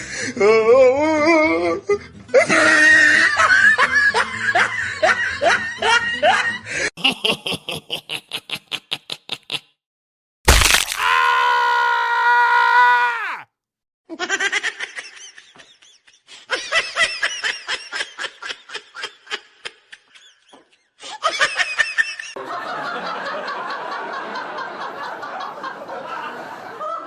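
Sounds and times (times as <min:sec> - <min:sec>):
crowd laughter: 0:02.4 - 0:09.7, 0:14.1 - 0:27.0
laugh in rhythmic bursts: 0:02.4 - 0:09.8, 0:14.1 - 0:27.0.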